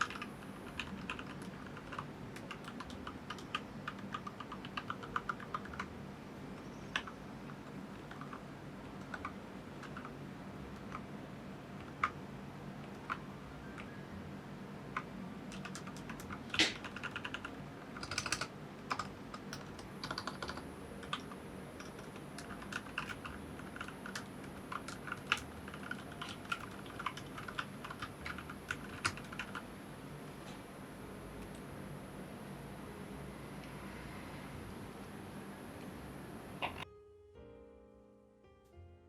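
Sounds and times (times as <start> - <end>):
mechanical keyboard typing: 0.0 - 6.0, 6.6 - 11.1, 11.8 - 12.2, 12.8 - 14.0, 14.9 - 29.6.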